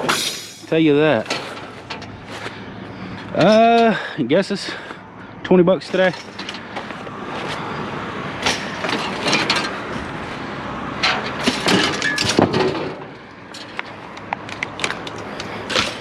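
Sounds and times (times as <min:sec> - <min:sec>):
scrap metal clanking: 0:00.0 - 0:04.0, 0:05.9 - 0:07.6, 0:08.4 - 0:10.4, 0:11.0 - 0:14.0, 0:14.8 - 0:16.0
steady rumbling: 0:00.0 - 0:16.0.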